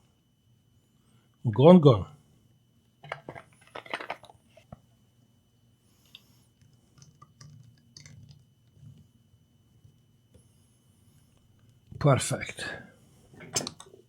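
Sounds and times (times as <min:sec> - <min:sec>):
hard objects clattering on workbench: 0:03.0 - 0:04.4.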